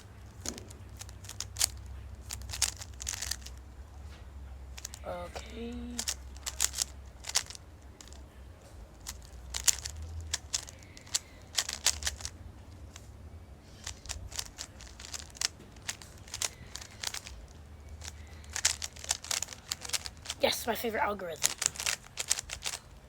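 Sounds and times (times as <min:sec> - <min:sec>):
puzzle cube layers clicking: 0:00.4 - 0:03.6, 0:04.8 - 0:08.2, 0:09.0 - 0:12.3, 0:13.8 - 0:20.5, 0:21.3 - 0:22.9.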